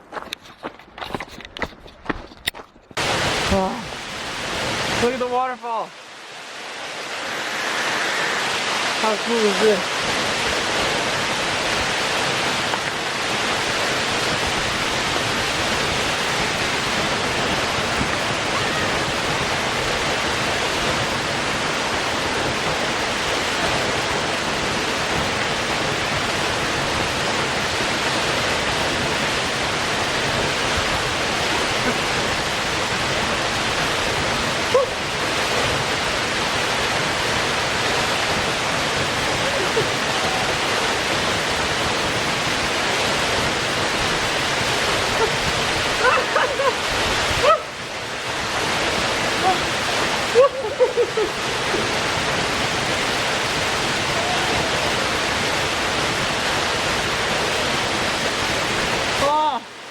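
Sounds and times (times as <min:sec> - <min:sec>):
waterfall rushing: 0:03.0 - 0:59.9.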